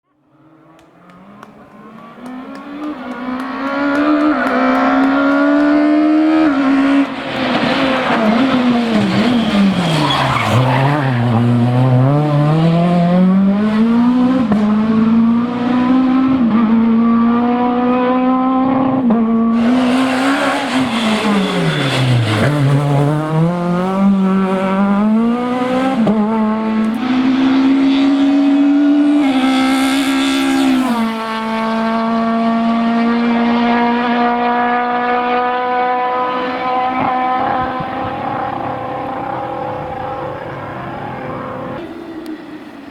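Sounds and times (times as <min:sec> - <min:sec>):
rally car engine at full throttle: 0:00.1 - 0:42.9.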